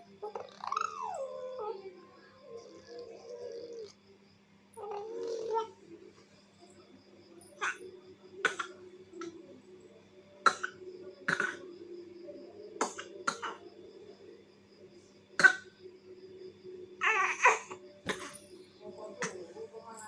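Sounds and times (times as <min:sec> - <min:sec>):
baby coughing: 0:08.4 - 0:08.8, 0:10.5 - 0:11.6, 0:12.8 - 0:13.6, 0:15.4 - 0:15.7, 0:17.0 - 0:18.4.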